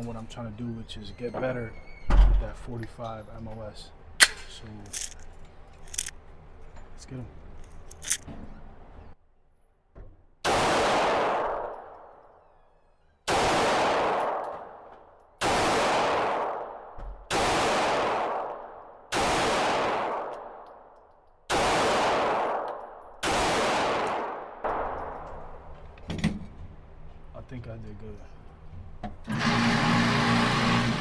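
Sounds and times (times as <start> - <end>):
pistol shots echoing: 10.4 - 12.2, 13.2 - 25.7.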